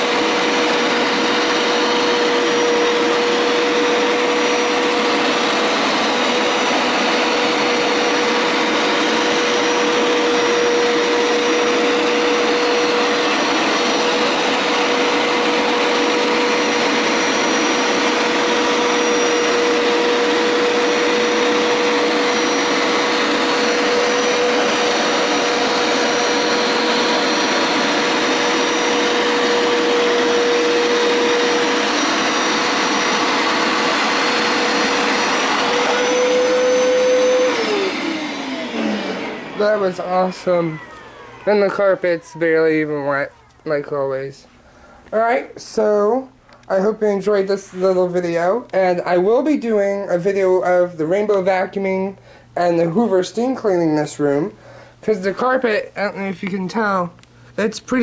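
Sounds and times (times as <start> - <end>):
carpet washer motor running: 0.0 - 44.0.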